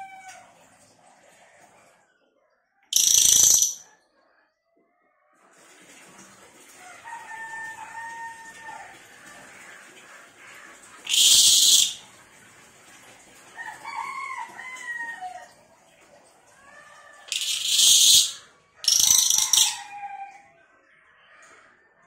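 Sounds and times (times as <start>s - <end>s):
songbird singing in shrill bursts: 3.0s - 3.8s, 11.1s - 12.0s, 17.3s - 19.8s.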